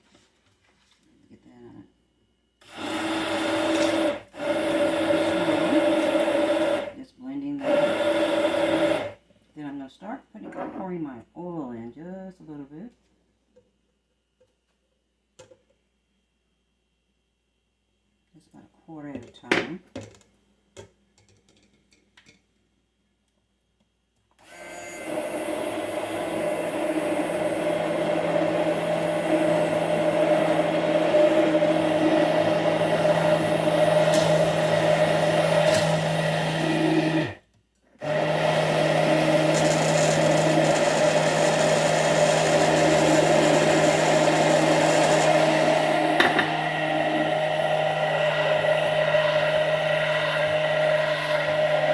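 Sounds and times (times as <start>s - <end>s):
immersion blender motor running: 2.6s - 7.0s, 7.6s - 9.2s, 24.4s - 37.4s, 38.0s - 51.9s.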